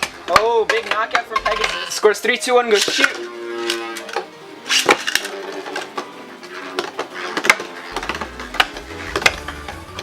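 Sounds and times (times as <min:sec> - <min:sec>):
metallic clacks of colliding tops: 0:00.0 - 0:02.0.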